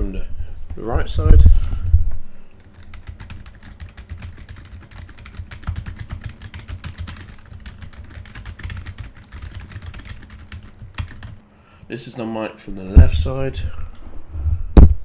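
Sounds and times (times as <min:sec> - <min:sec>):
fast keyboard typing: 0:02.6 - 0:11.4.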